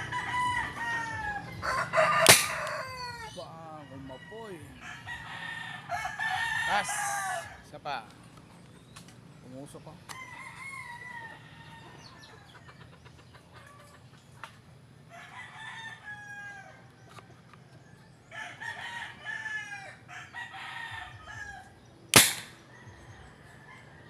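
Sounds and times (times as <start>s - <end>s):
roosters crowing: 0.0s - 8.1s, 10.0s - 14.1s, 14.8s - 24.0s
loud rifle shot: 2.2s - 2.9s, 22.2s - 22.6s.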